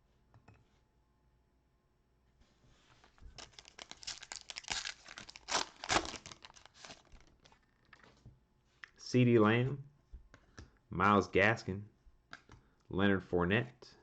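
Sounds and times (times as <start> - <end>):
wrapper tearing and crinkling: 3.0 - 7.6.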